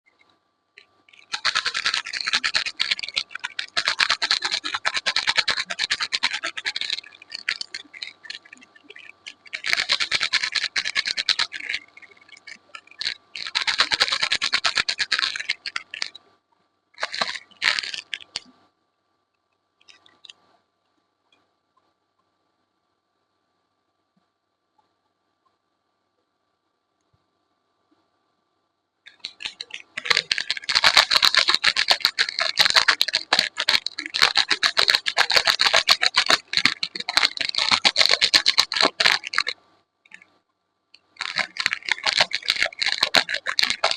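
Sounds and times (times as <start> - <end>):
packaging crinkling: 1.1 - 16.1, 17.0 - 18.5, 29.1 - 40.2, 41.0 - 43.9.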